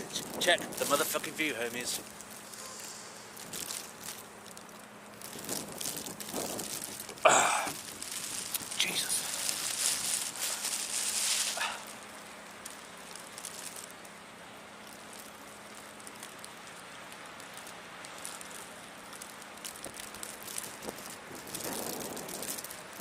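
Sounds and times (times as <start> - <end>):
snowstorm hiss: 0.0 - 4.5, 5.1 - 12.7, 20.1 - 23.0
faint steady hum: 0.0 - 23.0
rustle: 0.0 - 23.0
snow ticking on microphone: 0.0 - 23.0.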